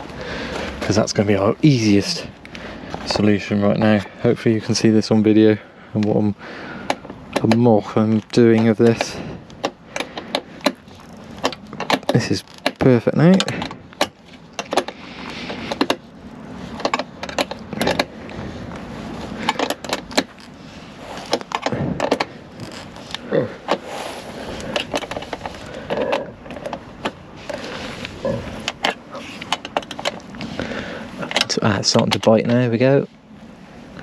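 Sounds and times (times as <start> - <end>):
spanner clicking and scraping on nut: 6.8 - 16.0, 16.7 - 18.1, 19.4 - 20.5, 28.6 - 30.4.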